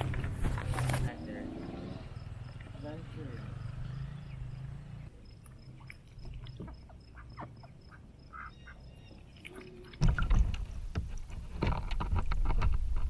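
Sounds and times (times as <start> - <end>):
ducks quacking: 6.6 - 10.0.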